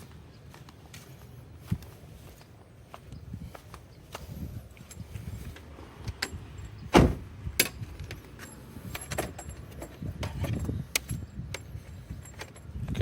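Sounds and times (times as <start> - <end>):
loud thump: 6.9 - 7.3.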